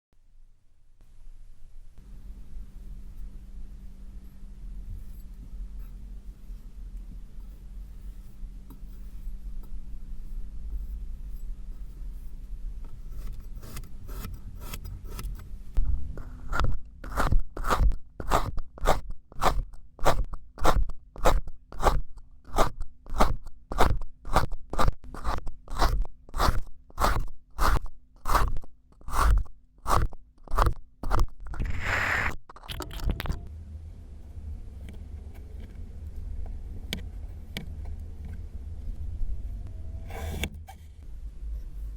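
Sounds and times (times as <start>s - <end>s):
sand scraping: 31.6s - 32.4s.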